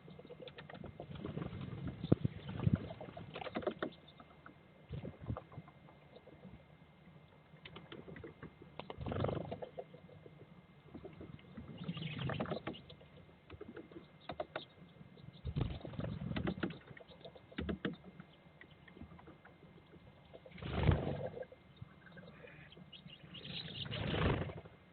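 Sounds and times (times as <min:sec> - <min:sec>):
woodpecker tapping on wood: 0:12.2 - 0:14.8, 0:15.7 - 0:19.5.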